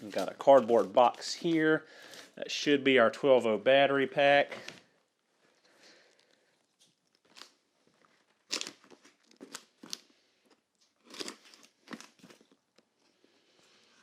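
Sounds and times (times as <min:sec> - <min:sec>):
cardboard box crunching and tearing: 0:00.0 - 0:01.2, 0:08.5 - 0:10.0.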